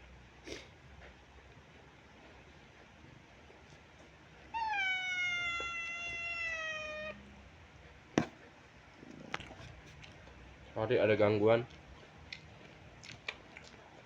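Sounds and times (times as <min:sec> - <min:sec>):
cat meowing: 0:04.5 - 0:07.4.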